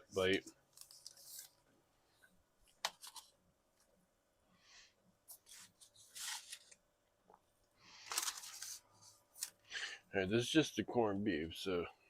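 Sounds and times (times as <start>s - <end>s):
packaging rustling: 8.0s - 8.8s.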